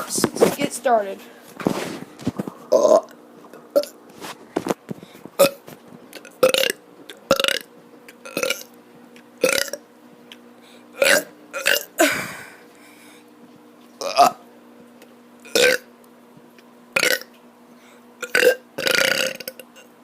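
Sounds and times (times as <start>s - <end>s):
boy burping: 2.7s - 4.0s, 5.4s - 5.6s, 9.4s - 9.8s, 11.0s - 12.5s, 14.0s - 14.4s, 15.5s - 15.9s, 17.0s - 17.3s, 18.2s - 19.6s.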